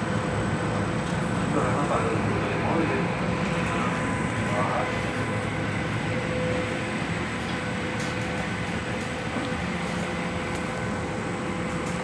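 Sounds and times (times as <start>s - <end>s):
washing machine hum and whine: 0.0s - 12.0s.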